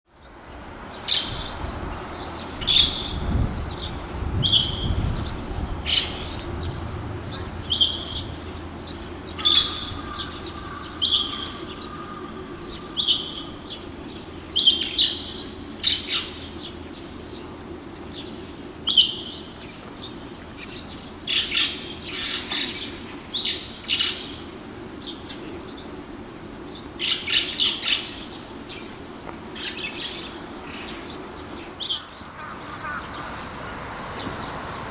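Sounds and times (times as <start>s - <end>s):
bird chirping: 2.2s - 13.8s
low steady hum: 3.2s - 14.5s.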